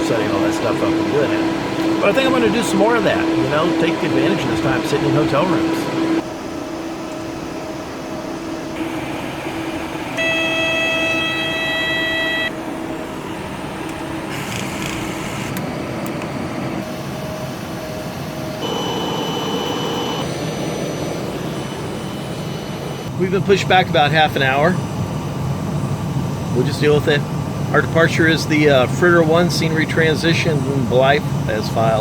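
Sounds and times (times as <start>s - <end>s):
high whine: 0.0s - 32.0s
machinery humming: 0.0s - 32.0s
faint high tone: 10.2s - 12.6s.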